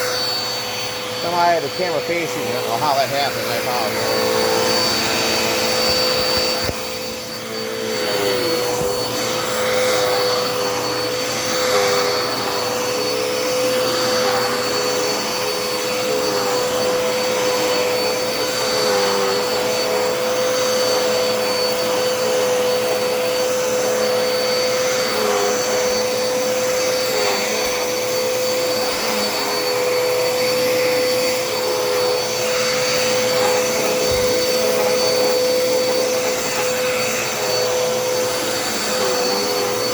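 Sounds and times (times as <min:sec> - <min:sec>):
vacuum cleaner motor whine: 0:00.0 - 0:39.9.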